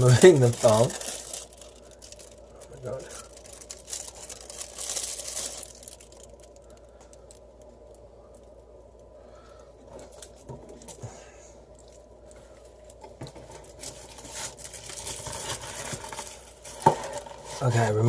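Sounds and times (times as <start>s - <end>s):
plastic film crinkling and tearing: 0.0s - 8.0s, 12.8s - 18.0s
faint crackles and clicks: 0.0s - 11.1s.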